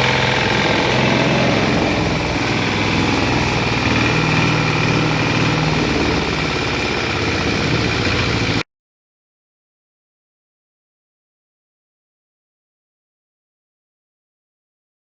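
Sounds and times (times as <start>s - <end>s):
grinding machine humming: 0.0s - 8.6s.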